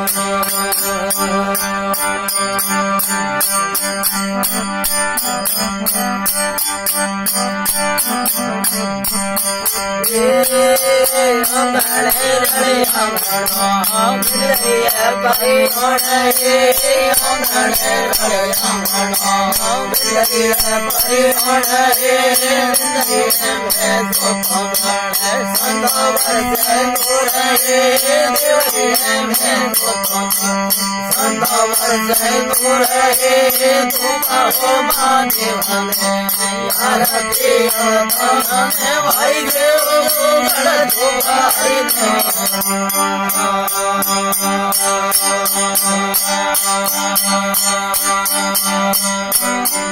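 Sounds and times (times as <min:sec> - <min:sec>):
steady drone: 0:00.0 - 0:47.0
fast jingling percussion: 0:00.0 - 0:49.9
wavering melody: 0:00.0 - 0:49.9.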